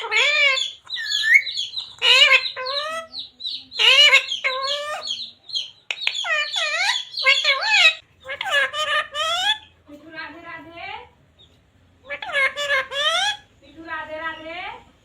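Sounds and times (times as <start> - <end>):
parrot squawky chattering: 0.0 - 9.8, 12.0 - 13.6.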